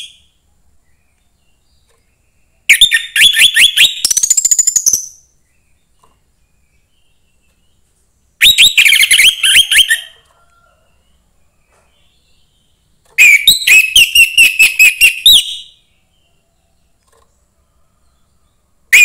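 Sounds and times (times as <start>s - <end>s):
thrush singing whistled notes: 2.7s - 5.9s, 8.4s - 10.2s, 13.2s - 16.0s.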